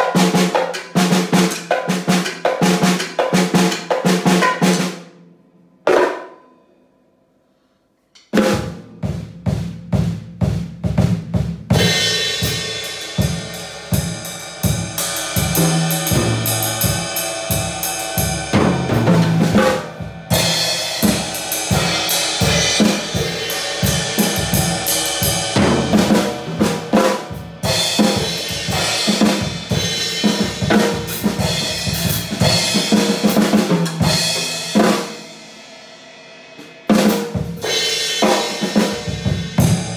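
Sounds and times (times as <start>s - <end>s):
drum kit playing: 0.0s - 5.2s, 8.2s - 39.9s
cymbals washing: 12.0s - 33.4s.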